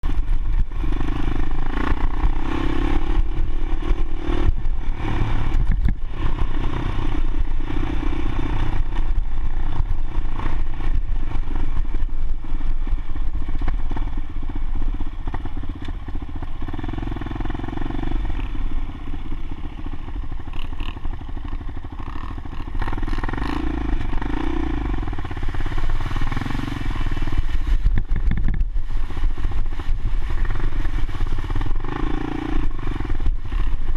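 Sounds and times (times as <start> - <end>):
motorcycle engine running: 0.0 - 33.9
motorcycle clattering over rough ground: 25.1 - 28.8.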